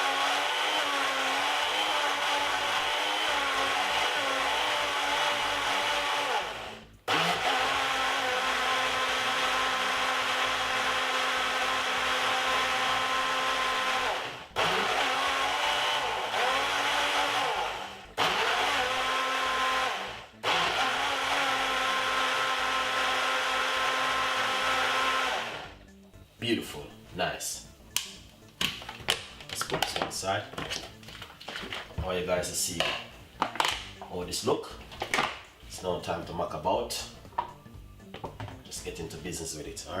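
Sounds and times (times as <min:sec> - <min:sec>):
blender motor running: 0:00.0 - 0:25.8.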